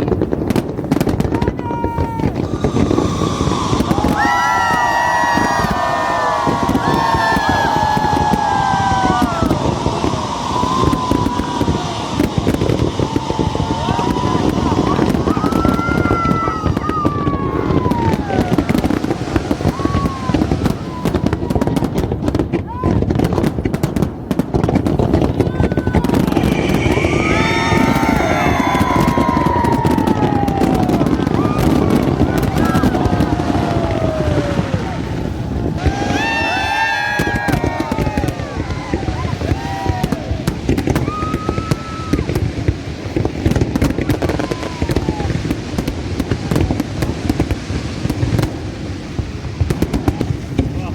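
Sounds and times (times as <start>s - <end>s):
fireworks crackling and popping: 0.0s - 50.9s
low rumble of bursts: 2.1s - 21.6s, 25.9s - 42.1s
descending whistle tone: 2.4s - 18.4s, 26.2s - 34.8s.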